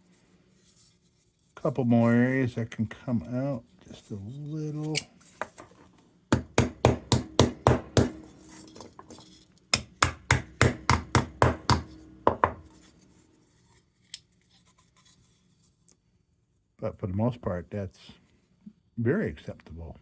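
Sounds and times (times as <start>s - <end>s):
hammer striking sheet metal: 6.4s - 9.2s, 9.8s - 12.7s
metallic ring: 8.2s - 9.4s.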